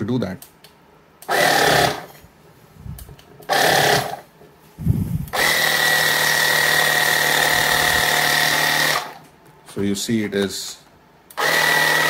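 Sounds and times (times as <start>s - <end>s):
air compressor running: 1.3s - 2.2s, 3.4s - 9.2s, 11.4s - 12.0s.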